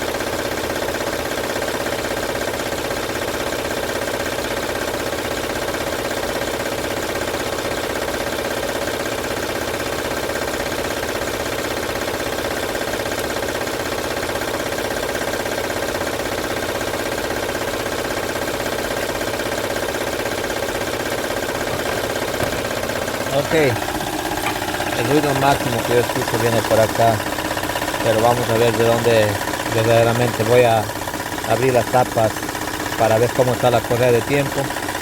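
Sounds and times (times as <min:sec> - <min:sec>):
car engine running: 0:18.9 - 0:35.0
timing belt rattling: 0:20.3 - 0:33.2.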